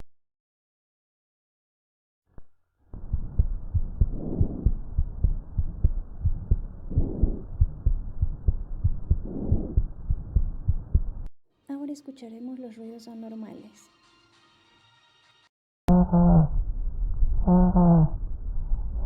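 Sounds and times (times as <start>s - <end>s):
heartbeats thumping: 3.0s - 11.3s
soft breaths through stethoscope: 4.0s - 4.8s.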